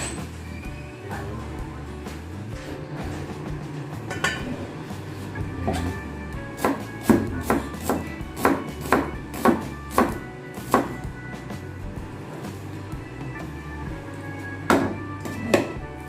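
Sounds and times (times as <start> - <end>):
background music: 0.0 - 16.0
knife chopping on cutting board: 6.6 - 11.0, 14.7 - 15.7.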